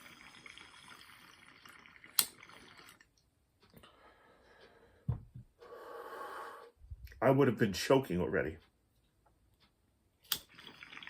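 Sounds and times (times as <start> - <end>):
water bubbling in a bong: 0.0 - 3.1, 10.4 - 11.0.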